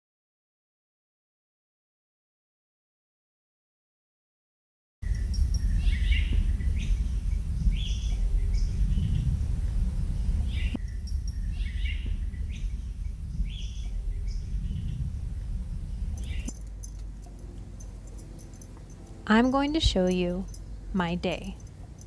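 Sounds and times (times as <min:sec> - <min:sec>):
songbirds chirping: 0:05.0 - 0:22.0
steady low rumble: 0:05.0 - 0:22.0.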